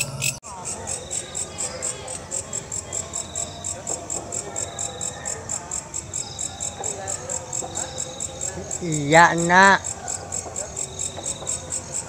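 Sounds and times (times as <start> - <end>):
katydid chirping: 0.0 - 12.0.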